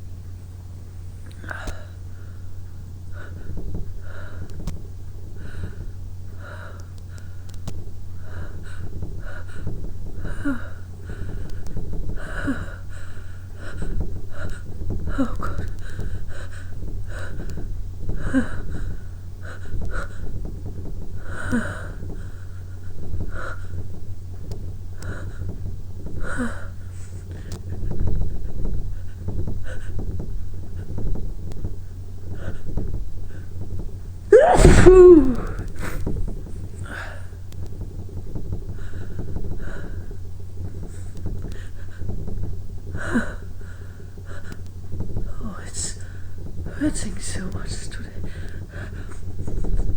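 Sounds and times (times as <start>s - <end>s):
steady low hum: 0.0s - 49.9s
woman breathing softly: 1.4s - 4.6s, 5.3s - 20.4s, 25.0s - 28.0s, 38.7s - 42.2s, 42.9s - 49.8s
sharp gasping inhalations: 34.3s - 36.1s
woman sniffing and breathing hard: 34.3s - 36.1s.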